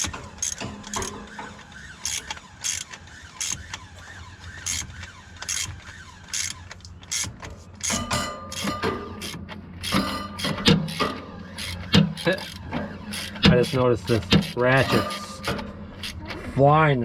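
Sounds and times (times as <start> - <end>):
ratchet wrench clicking: 0.0 - 1.1, 2.0 - 3.6, 5.4 - 5.7, 6.3 - 16.2.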